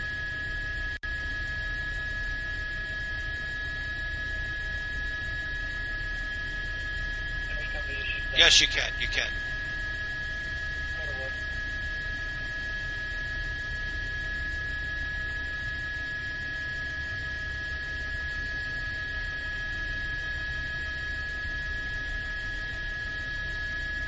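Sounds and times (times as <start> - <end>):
high whine over low rumble: 7.1 - 9.8, 10.7 - 11.4.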